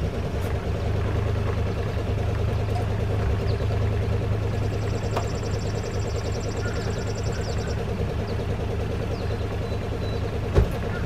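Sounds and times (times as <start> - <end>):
engine idling: 0.0 - 11.0.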